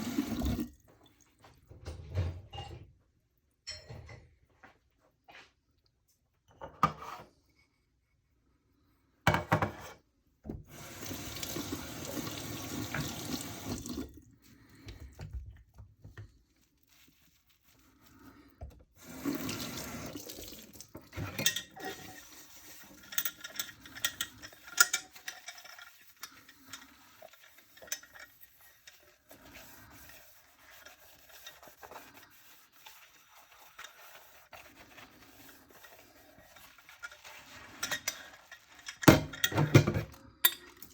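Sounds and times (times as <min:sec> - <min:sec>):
tap water running into sink: 0:00.0 - 0:00.8, 0:10.6 - 0:14.2, 0:19.0 - 0:22.8
dishes knocking and clinking: 0:03.7 - 0:04.4, 0:09.3 - 0:09.9, 0:39.0 - 0:40.6.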